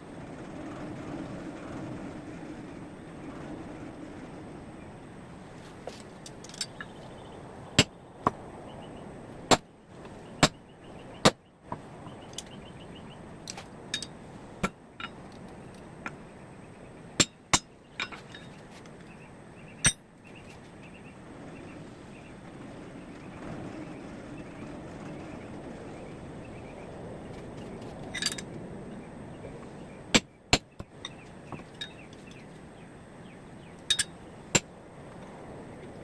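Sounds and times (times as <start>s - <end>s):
steady background noise: 0.0s - 36.0s
hammer striking steel on anvil: 10.4s - 10.6s, 17.2s - 18.2s, 19.8s - 20.0s, 33.9s - 34.7s.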